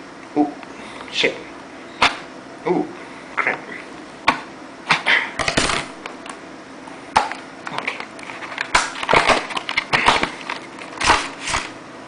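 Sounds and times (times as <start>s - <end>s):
scissors cutting packaging: 8.6s - 11.7s.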